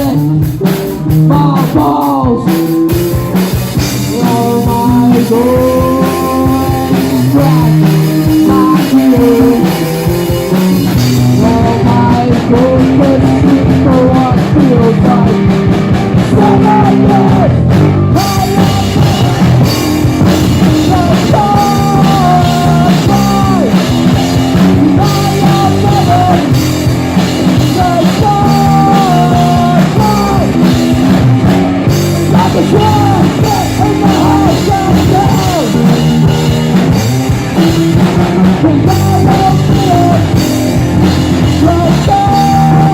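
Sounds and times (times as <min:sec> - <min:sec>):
rock band playing live: 0:00.0 - 0:42.9.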